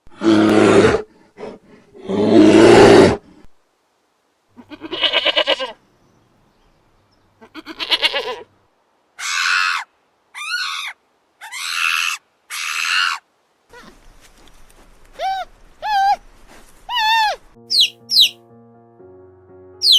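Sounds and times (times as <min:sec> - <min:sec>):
quavering bleats: 0:04.6 - 0:05.8, 0:07.4 - 0:08.5
short high-pitched animal calls: 0:09.2 - 0:14.0, 0:16.9 - 0:18.4.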